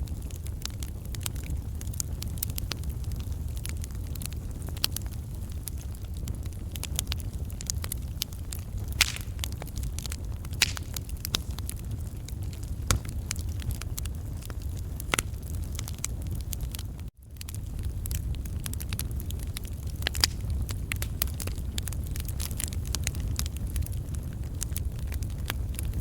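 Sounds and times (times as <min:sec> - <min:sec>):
low fire rumble: 0:00.0 - 0:26.0
wood fire crackling and popping: 0:00.0 - 0:26.0.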